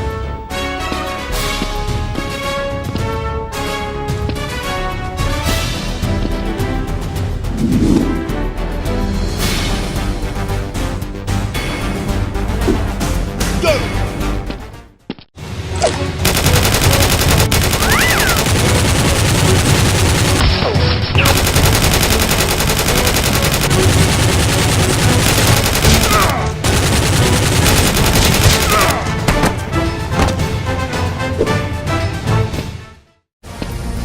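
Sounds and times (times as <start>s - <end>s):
background music: 0.0s - 34.0s
automatic gunfire: 16.2s - 20.4s, 21.2s - 29.0s.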